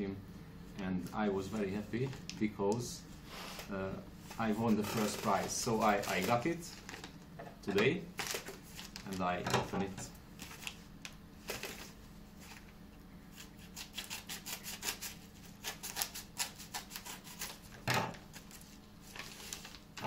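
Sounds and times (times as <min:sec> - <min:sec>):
paper rubbing and scratching: 0:04.3 - 0:06.5, 0:13.7 - 0:17.6.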